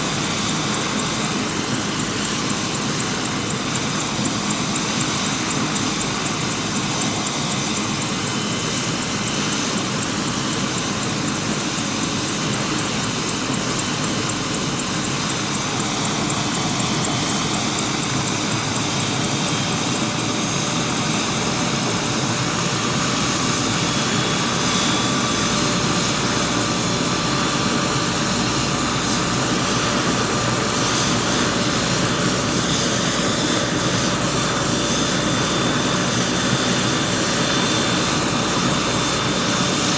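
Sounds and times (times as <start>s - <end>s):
helicopter rotor beating: 0.0s - 39.9s.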